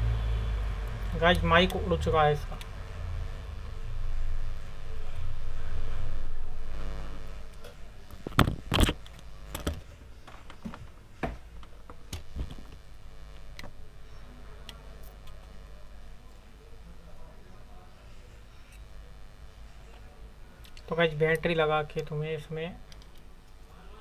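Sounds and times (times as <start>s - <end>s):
low rumble: 2.0s - 7.6s.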